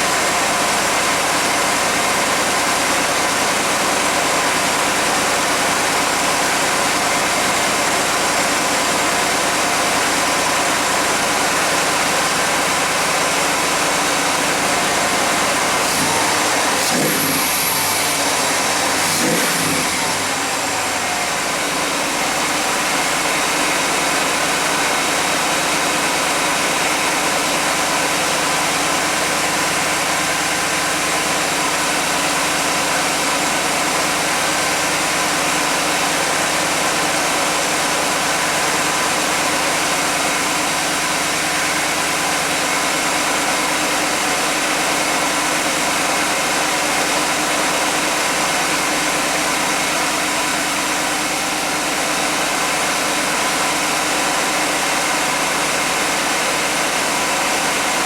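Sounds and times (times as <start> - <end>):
car engine idling: 0.0 - 58.0.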